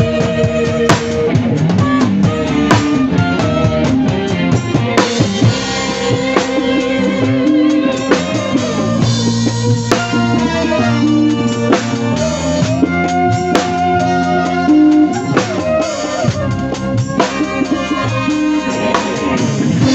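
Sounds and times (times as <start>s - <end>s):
band playing live: 0.0s - 19.9s
drum kit: 0.0s - 19.9s.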